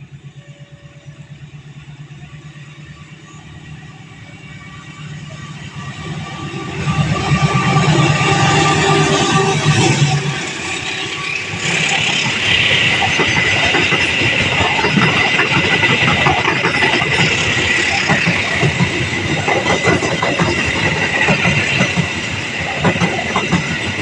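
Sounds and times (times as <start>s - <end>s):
train wheels clacking over rail joints: 10.1s - 24.0s.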